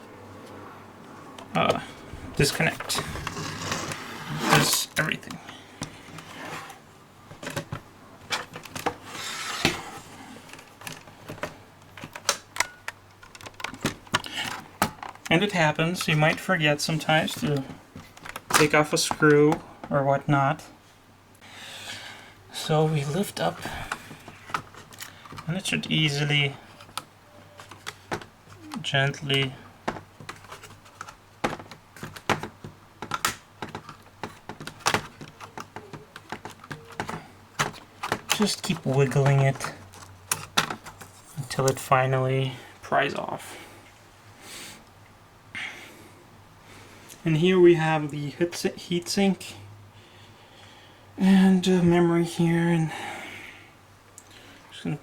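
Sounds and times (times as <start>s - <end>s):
plastic laptop parts clicking: 10.5s - 15.3s, 26.8s - 41.8s.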